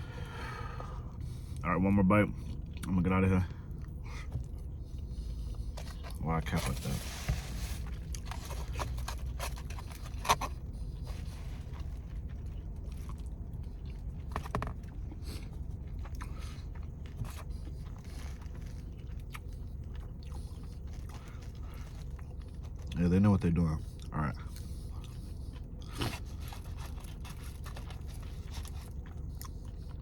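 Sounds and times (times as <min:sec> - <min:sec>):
low steady hum: 0:00.0 - 0:30.0
person chewing food: 0:02.3 - 0:06.2, 0:07.7 - 0:23.0, 0:23.9 - 0:30.0
small scrapes and clicks: 0:05.8 - 0:12.0.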